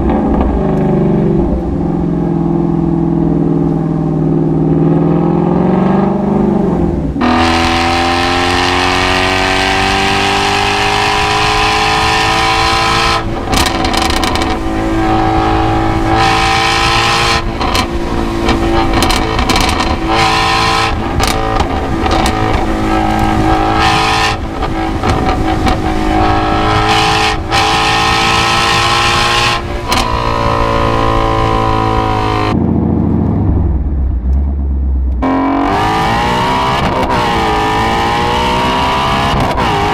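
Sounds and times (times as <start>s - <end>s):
car engine revving high: 0.0s - 39.9s
sharp exhaust cracks: 10.8s - 35.3s.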